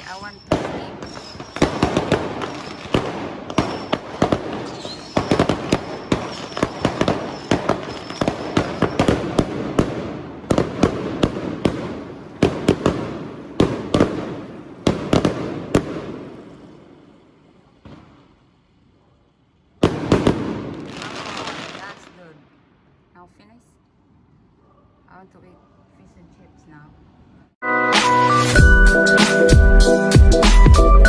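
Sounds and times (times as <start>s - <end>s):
fireworks bangs and crackles: 0.0s - 18.9s, 19.7s - 22.4s
faint high whistle: 27.8s - 29.4s.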